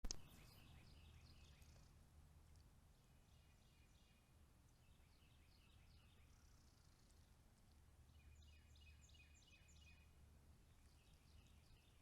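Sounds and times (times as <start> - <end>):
brief click: 0.0 - 0.4
small birds chirping: 0.0 - 12.0.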